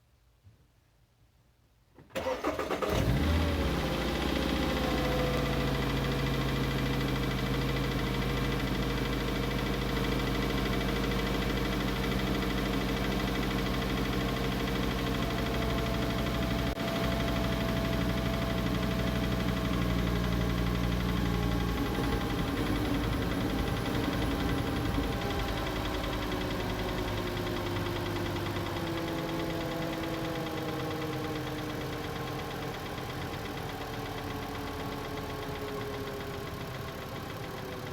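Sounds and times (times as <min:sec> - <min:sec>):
car engine idling: 0:02.2 - 0:37.9
engine tapping noise: 0:04.1 - 0:37.9.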